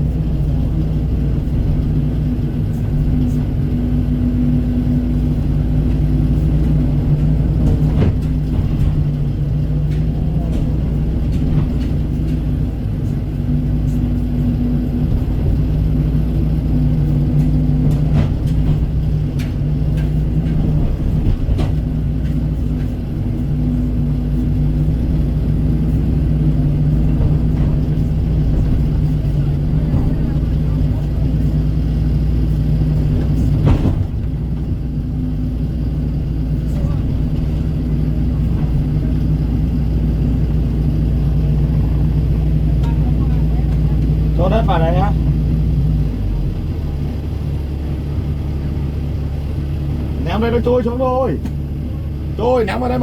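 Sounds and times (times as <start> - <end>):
excavator diesel engine running: 0.0 - 53.0
sharp clicks and knocks: 17.0 - 23.1.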